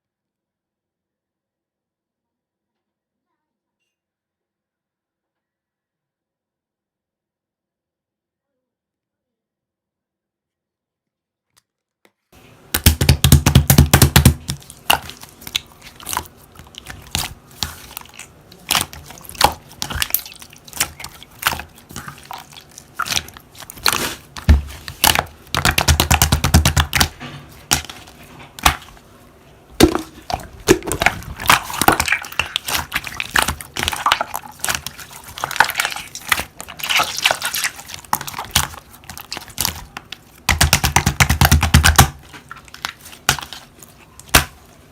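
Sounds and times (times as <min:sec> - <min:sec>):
slime squelching: 0:12.4 - 0:44.9
slime crackling and popping: 0:12.8 - 0:29.0, 0:29.8 - 0:44.6.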